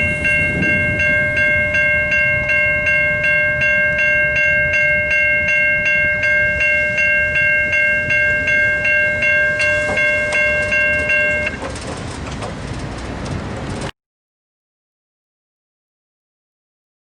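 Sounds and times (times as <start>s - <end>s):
level crossing bells ringing: 0.0s - 11.6s
low train rumble: 0.0s - 13.9s.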